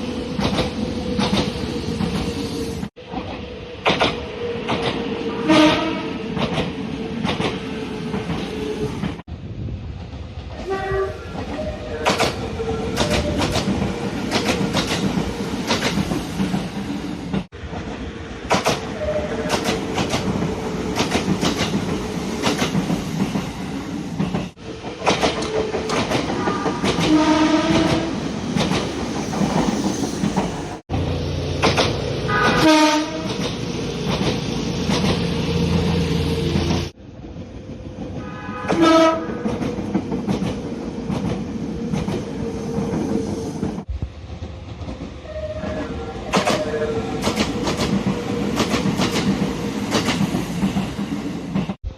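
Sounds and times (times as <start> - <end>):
train horn blasts: 5.4 - 6.2, 10.6 - 11.2, 26.4 - 28.2, 32.3 - 33.4, 38.2 - 39.5
wheel clicks on rail joints: 24.2 - 27.1.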